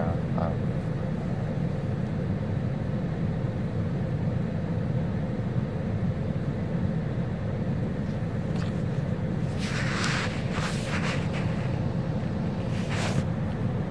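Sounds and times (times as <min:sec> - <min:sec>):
road traffic rumble: 0:00.0 - 0:05.0, 0:05.9 - 0:13.9
faint engine hum: 0:00.0 - 0:13.9
short hissing burst: 0:09.4 - 0:11.9.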